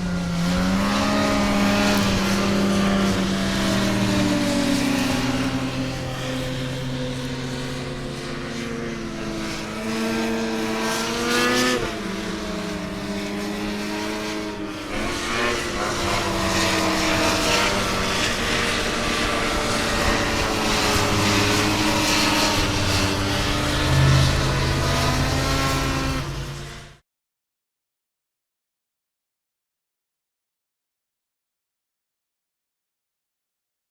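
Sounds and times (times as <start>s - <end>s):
snowmobile engine running: 0.0s - 27.0s.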